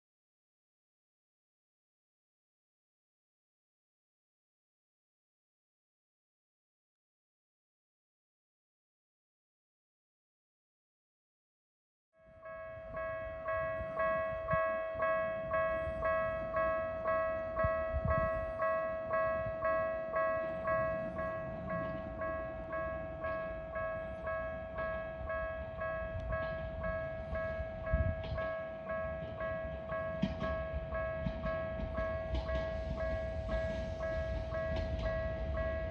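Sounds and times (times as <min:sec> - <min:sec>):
level-crossing warning bell: 0:12.2 - 0:35.9.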